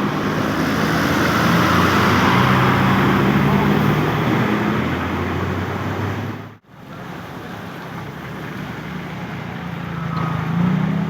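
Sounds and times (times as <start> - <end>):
passing vehicle engine hum: 0.0 - 6.5
road noise rush: 0.0 - 11.0.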